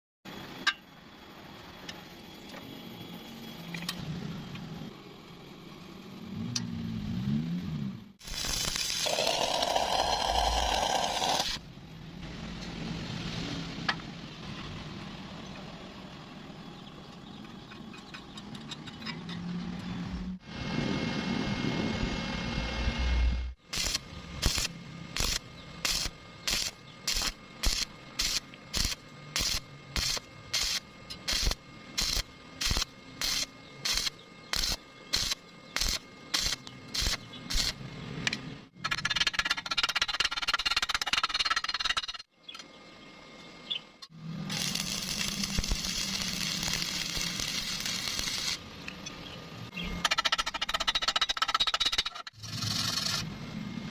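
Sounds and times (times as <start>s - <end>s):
welding arc crackling: 8.2s - 11.6s, 23.6s - 37.8s, 44.1s - 48.7s.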